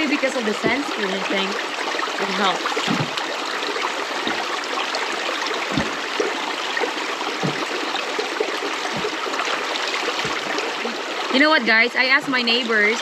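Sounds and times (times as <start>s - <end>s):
shallow river water rushing: 0.0s - 13.0s
small plops in water: 2.0s - 11.0s.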